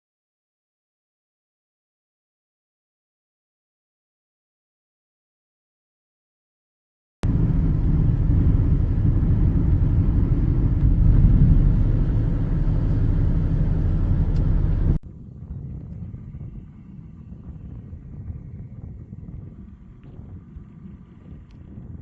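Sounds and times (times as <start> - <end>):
car road and wind rumble: 7.2 - 22.0.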